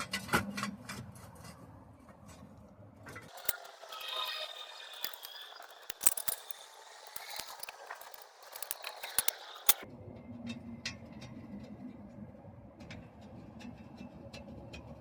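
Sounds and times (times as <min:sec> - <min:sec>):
metal tools clinking and scraping: 0:03.3 - 0:09.8
sharp metal clanks: 0:03.3 - 0:09.8.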